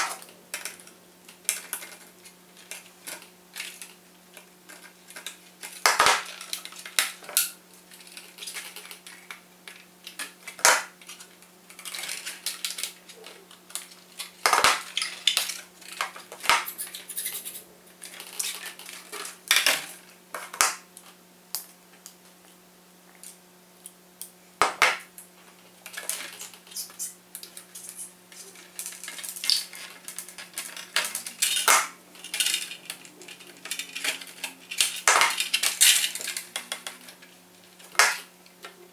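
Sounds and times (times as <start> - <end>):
small parts clicking and clinking: 0.0 - 21.7, 25.2 - 38.8.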